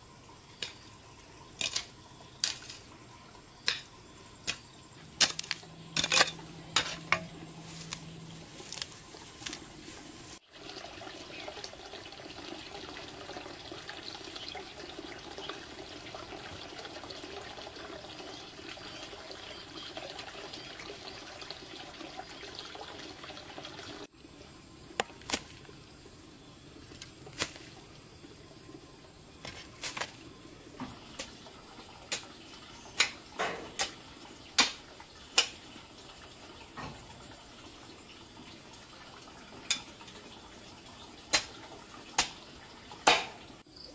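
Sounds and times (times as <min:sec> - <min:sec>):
water running: 0:00.0 - 0:24.1.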